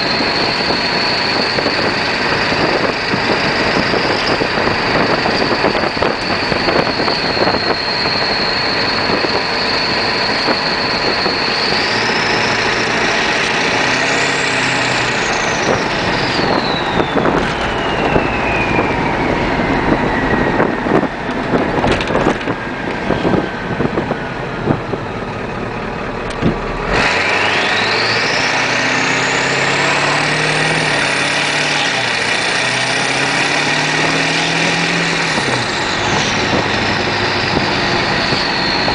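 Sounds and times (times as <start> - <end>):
turbo whistle: 0.0 - 21.2
diesel engine running: 0.0 - 38.9.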